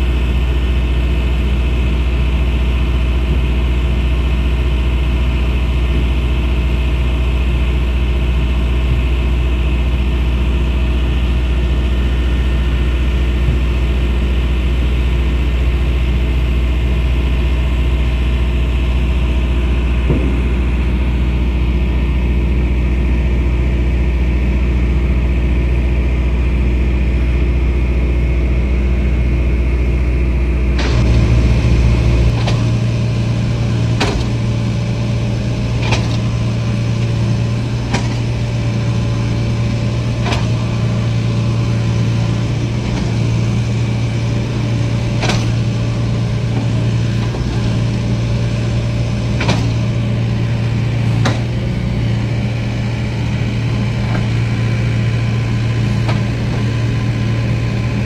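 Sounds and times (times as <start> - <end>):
heavy diesel engine droning: 0.0 - 58.0
sharp metallic knocks: 30.8 - 38.7.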